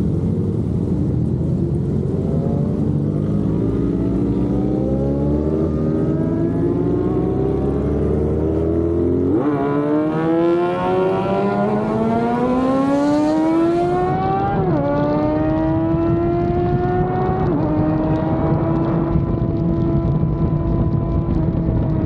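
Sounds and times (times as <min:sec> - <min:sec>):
motorcycle engine accelerating: 0:00.0 - 0:22.0.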